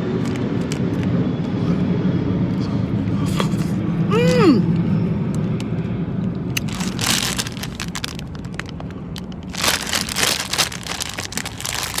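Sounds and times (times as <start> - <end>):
low steady hum: 0.0 - 12.0
gum chewing smacks: 2.5 - 4.7.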